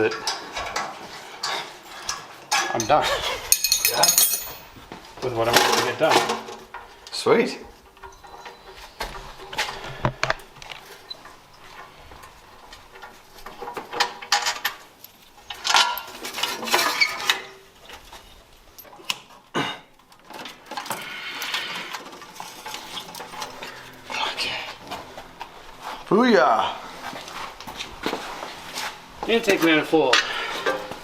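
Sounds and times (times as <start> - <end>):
metal tools clinking and clattering: 0.1 - 4.8, 13.6 - 19.2, 21.9 - 23.9.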